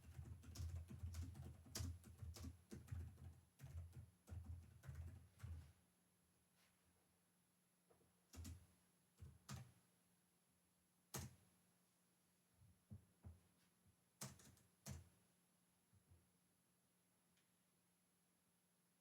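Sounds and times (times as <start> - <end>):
computer keyboard keystrokes: 0.0 - 5.6, 8.3 - 8.6, 9.2 - 9.7, 11.2 - 11.4, 14.2 - 15.1.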